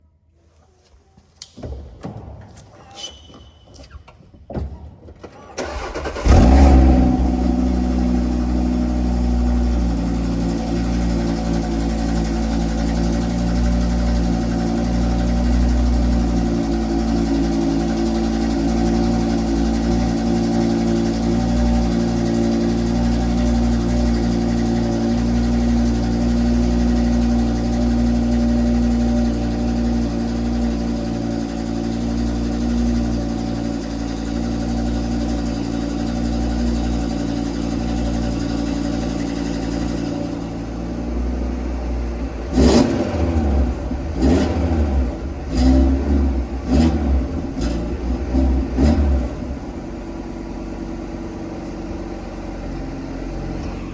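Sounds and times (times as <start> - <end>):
engine revving: 5.6 - 28.4, 42.3 - 50.0
car engine idling: 5.6 - 53.9.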